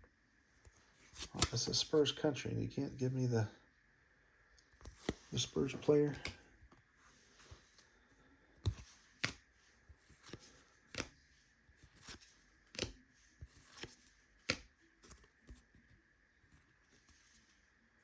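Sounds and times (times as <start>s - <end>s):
trading cards being flipped: 0.6s - 1.8s, 4.7s - 6.5s, 8.6s - 15.8s
cards clicking set down: 1.2s - 1.8s, 4.8s - 6.5s, 8.6s - 9.4s, 10.1s - 11.2s, 11.9s - 15.6s.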